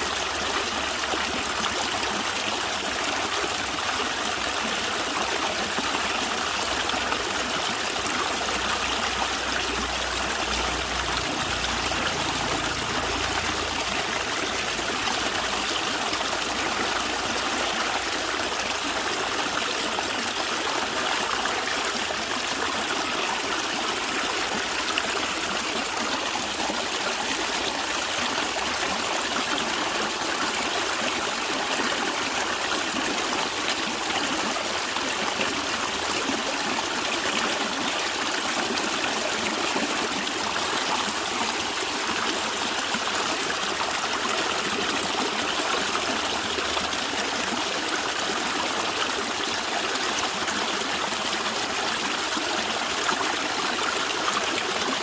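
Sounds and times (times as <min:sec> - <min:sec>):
stream running over stones: 0:00.0 - 0:55.0.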